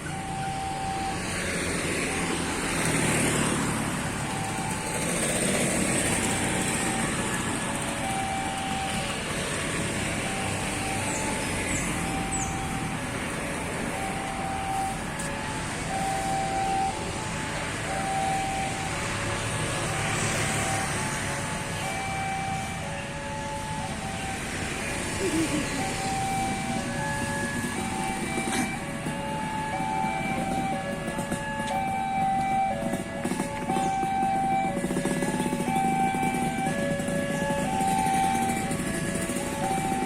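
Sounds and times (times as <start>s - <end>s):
passing cars and motorbikes: 0.0s - 40.0s.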